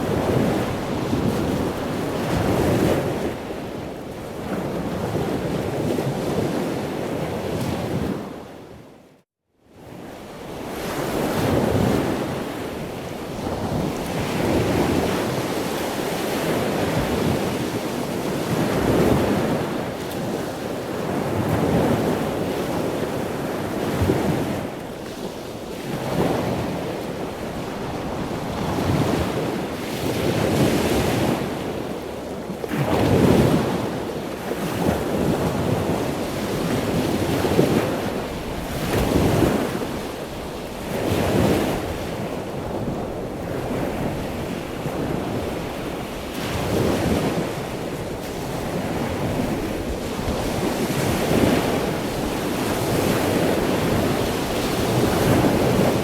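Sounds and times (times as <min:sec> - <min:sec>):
ocean waves breaking: 0:10.6 - 0:56.0.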